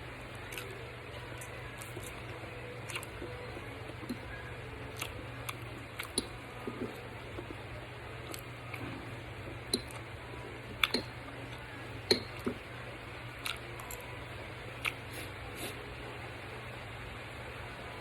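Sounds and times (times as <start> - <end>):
steady low hum: 0.0 - 18.0
mouth clicks and smacks: 0.4 - 0.8, 1.4 - 3.3, 5.0 - 7.6, 9.7 - 10.1, 10.7 - 12.6, 13.4 - 14.0.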